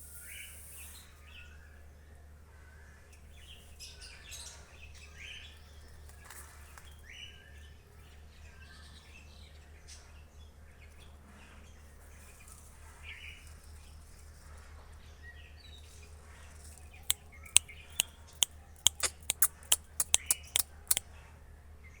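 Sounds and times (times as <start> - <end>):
sharp clicks: 18.8 - 21.0.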